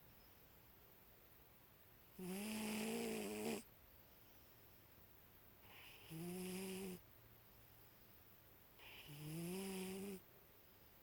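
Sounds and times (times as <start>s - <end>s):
cat snoring: 2.2s - 3.7s, 5.6s - 7.0s, 8.8s - 10.2s.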